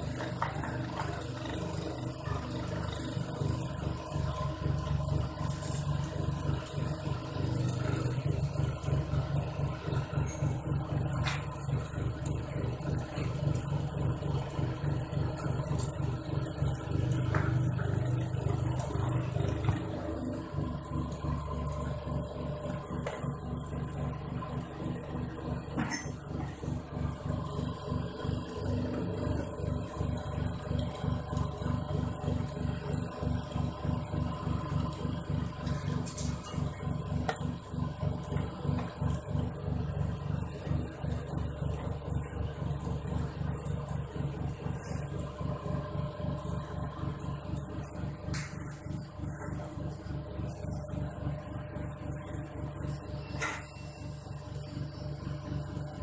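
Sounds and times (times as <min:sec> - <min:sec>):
electric machine pulsing hum: 0:00.0 - 0:56.0.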